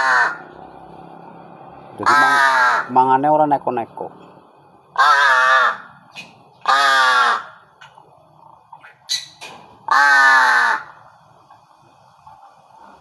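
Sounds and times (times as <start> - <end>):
bird harsh caw-like call: 5.0 - 7.9, 8.8 - 11.0.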